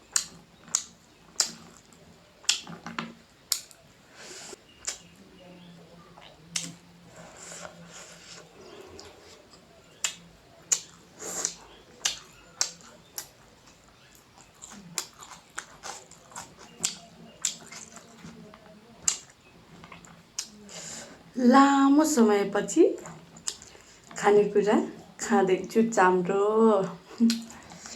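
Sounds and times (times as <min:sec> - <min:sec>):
wet chewing and smacking: 0:00.0 - 0:04.0, 0:04.6 - 0:05.3, 0:06.0 - 0:20.6, 0:23.0 - 0:24.2
sharp mouth clicks: 0:00.1 - 0:01.8, 0:03.5 - 0:03.8, 0:10.0 - 0:13.3, 0:27.2 - 0:27.7.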